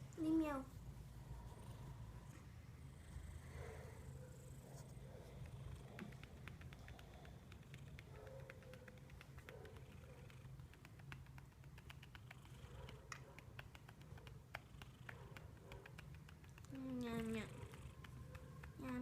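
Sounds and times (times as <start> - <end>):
soft breaths: 0.8 - 8.8.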